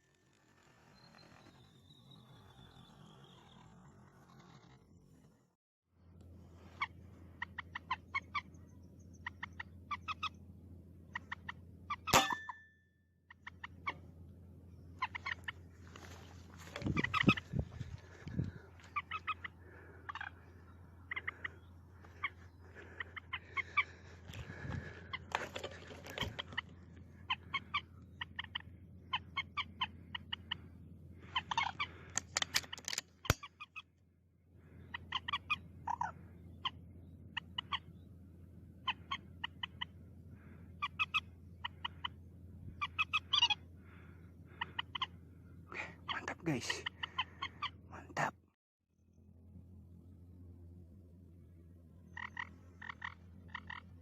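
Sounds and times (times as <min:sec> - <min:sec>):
waterhens calling: 0:14.9 - 0:33.8, 0:34.8 - 0:37.9, 0:38.8 - 0:45.2, 0:45.8 - 0:47.8, 0:52.0 - 0:54.0.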